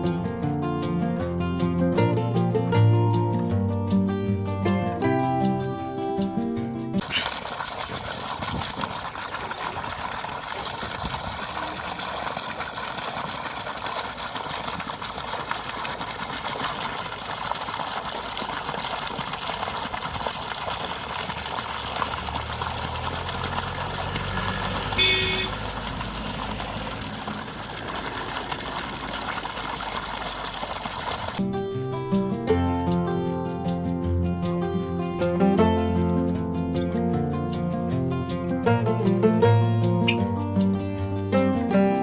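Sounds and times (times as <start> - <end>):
low engine rumble: 19.6 - 31.4
vehicle horn toot: 24.9 - 25.7.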